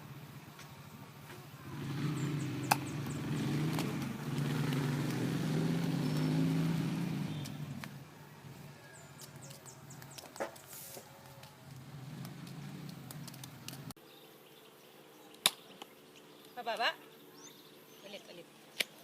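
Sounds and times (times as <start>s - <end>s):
vehicle engine passing by: 0.0s - 10.0s, 10.6s - 14.0s.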